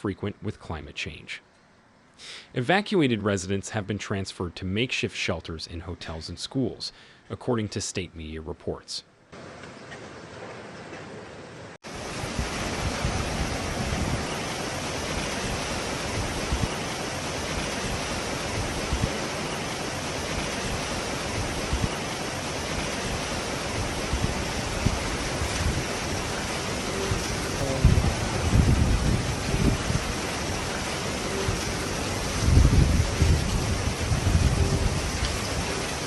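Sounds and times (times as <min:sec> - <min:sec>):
rushing floodwater roar: 0:11.8 - 0:36.0
wind buffeting microphone: 0:12.1 - 0:16.8, 0:17.5 - 0:19.4, 0:20.3 - 0:36.0.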